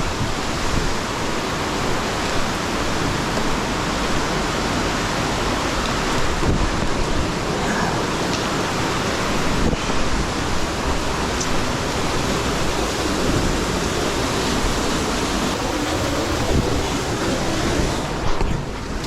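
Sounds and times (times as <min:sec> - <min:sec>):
floodwater rushing in creek: 0:00.0 - 0:19.0.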